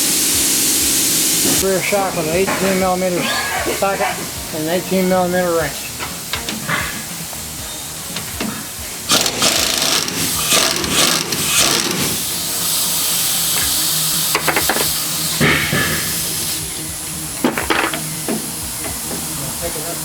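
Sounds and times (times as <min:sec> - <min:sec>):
steady hiss: 0:00.0 - 0:20.0
socket wrench rattling: 0:08.2 - 0:12.1, 0:13.6 - 0:16.6, 0:17.4 - 0:19.3
metallic clicks and clanks: 0:13.6 - 0:16.6, 0:17.4 - 0:19.2.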